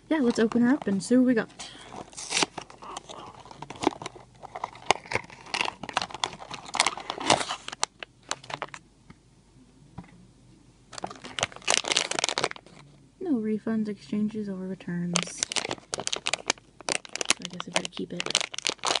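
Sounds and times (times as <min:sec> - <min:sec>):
packaging crinkling and tearing: 0:01.7 - 0:08.8, 0:10.9 - 0:12.9, 0:15.1 - 0:19.0.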